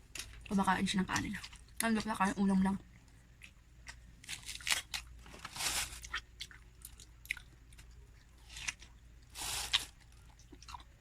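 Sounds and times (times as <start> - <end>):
biting and chewing watermelon: 3.4 - 11.0.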